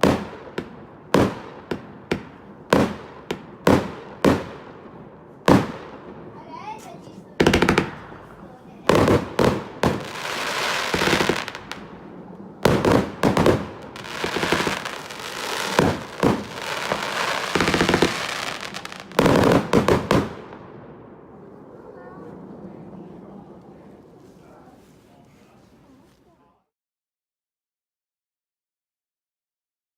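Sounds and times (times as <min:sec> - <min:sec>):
firework crackling: 0:00.0 - 0:20.6
firework bangs: 0:00.0 - 0:24.1.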